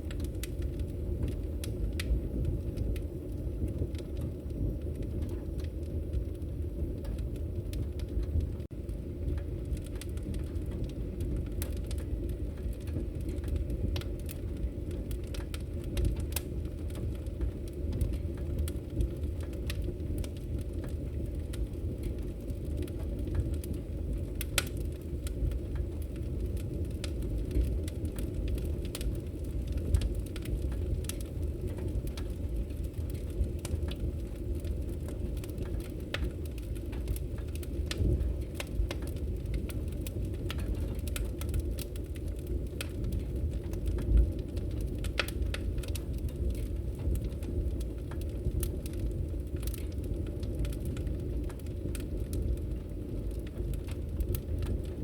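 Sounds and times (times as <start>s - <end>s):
fire crackling and popping: 0.0s - 55.0s
fireplace flames rumbling: 0.0s - 55.0s.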